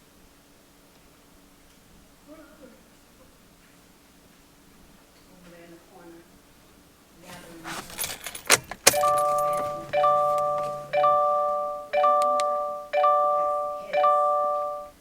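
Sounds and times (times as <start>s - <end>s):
keys jangling: 7.3s - 11.0s
car warning chime: 7.6s - 15.0s.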